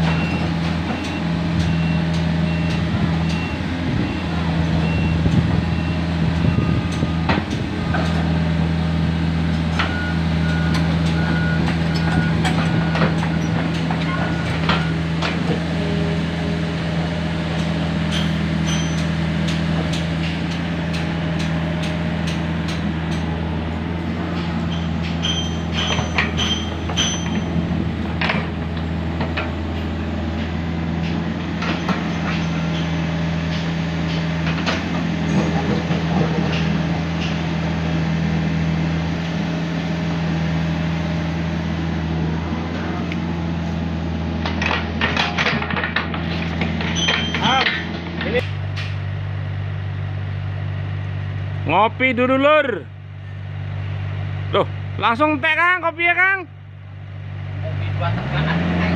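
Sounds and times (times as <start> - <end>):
excavator diesel engine running: 0.0 - 58.9
knocks and clanks: 24.4 - 29.6, 44.4 - 49.0.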